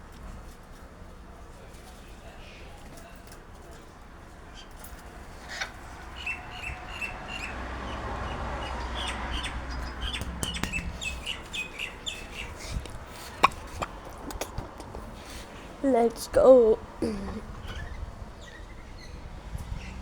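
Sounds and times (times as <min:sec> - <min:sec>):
small birds chirping: 0:05.4 - 0:20.0.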